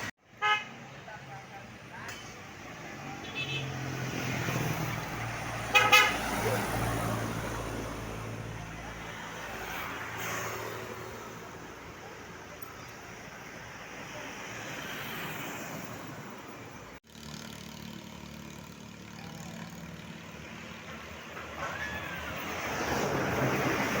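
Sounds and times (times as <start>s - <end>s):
road traffic noise: 0.0s - 24.0s
vehicle passing: 2.6s - 11.9s.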